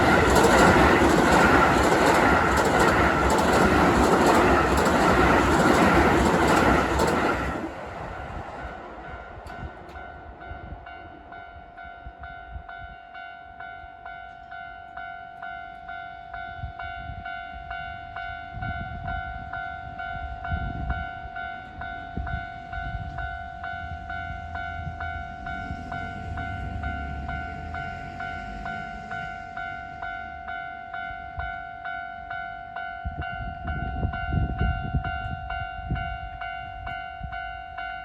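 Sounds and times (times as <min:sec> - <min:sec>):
passing train rumble: 0:00.0 - 0:14.2, 0:16.3 - 0:38.0
level crossing warning bell: 0:00.0 - 0:38.0.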